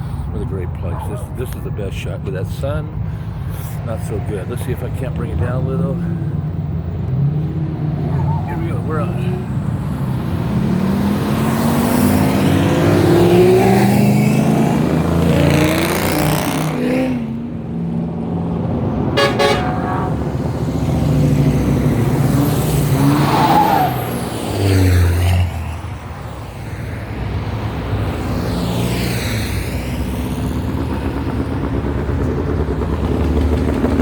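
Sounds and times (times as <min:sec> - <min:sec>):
cars driving past revving: 0:00.0 - 0:34.0
car horn toot: 0:19.2 - 0:20.3.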